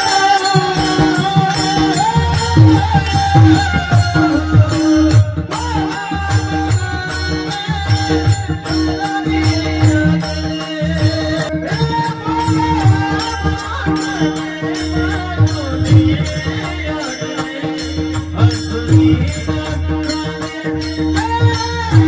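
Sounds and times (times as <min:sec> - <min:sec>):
man singing: 0:00.0 - 0:22.0
small metal percussion: 0:00.0 - 0:22.0.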